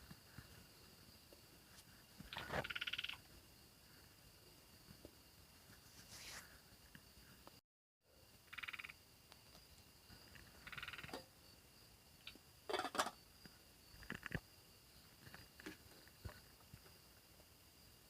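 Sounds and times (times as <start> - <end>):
night insects droning: 0.0 - 18.0
rattling frog calls: 2.2 - 3.3, 8.4 - 9.1, 10.2 - 11.4, 12.2 - 14.5.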